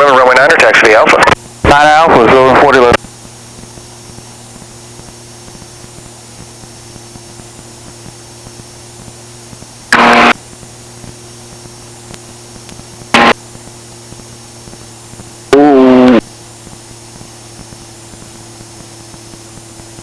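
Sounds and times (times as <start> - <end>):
loud clipped radio bursts: 0.0 - 3.0, 9.9 - 10.4, 13.1 - 13.5, 15.5 - 19.5
voice over radio: 0.0 - 3.0, 15.5 - 16.2
intercom electrical hum and hiss: 0.0 - 20.0.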